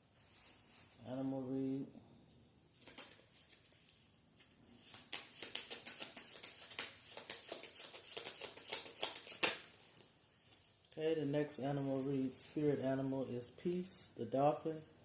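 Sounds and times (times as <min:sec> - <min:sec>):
cards being shuffled: 0:02.8 - 0:09.8.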